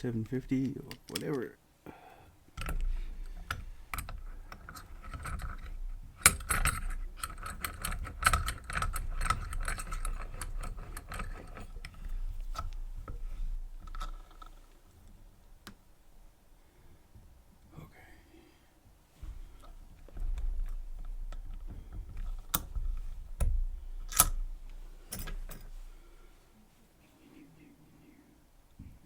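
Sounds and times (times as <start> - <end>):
keys and padlock jingling: 4.0 - 12.7, 24.0 - 25.8.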